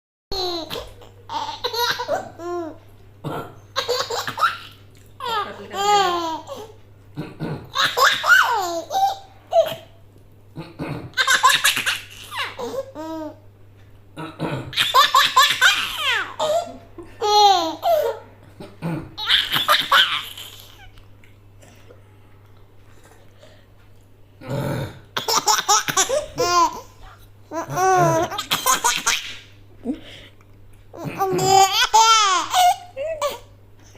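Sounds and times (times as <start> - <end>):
baby laughing: 0.3 - 2.8, 3.8 - 6.7, 7.7 - 10.0, 11.1 - 13.4, 14.7 - 18.3, 19.2 - 21.0, 25.2 - 30.0, 30.9 - 33.5.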